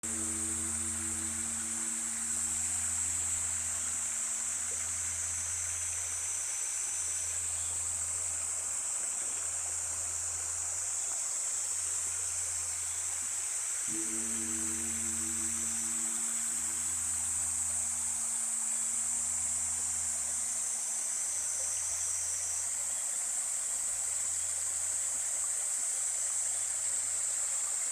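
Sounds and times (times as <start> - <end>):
temple bell ringing: 0.0 - 4.6, 13.9 - 20.8
steady high hiss: 0.0 - 27.9.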